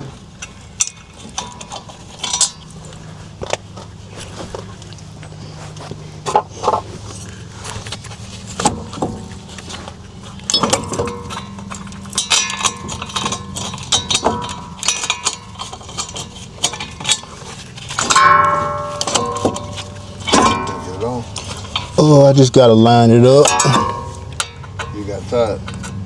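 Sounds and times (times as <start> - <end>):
steady low hum: 0.0 - 26.0
metal tools and parts clinking: 0.4 - 3.5, 8.5 - 26.0
metal scraping on metal: 8.5 - 26.0.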